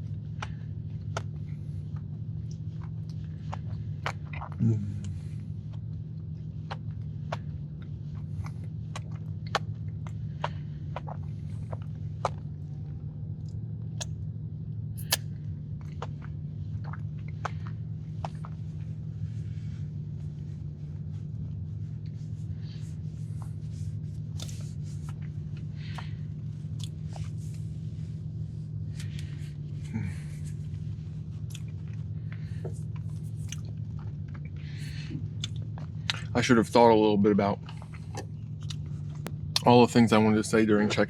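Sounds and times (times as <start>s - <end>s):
person chewing a cookie: 0.0s - 36.4s, 37.6s - 40.6s
low steady hum: 0.0s - 41.0s
mouth clicks and smacks: 6.6s - 12.5s, 15.0s - 15.3s, 32.7s - 36.3s.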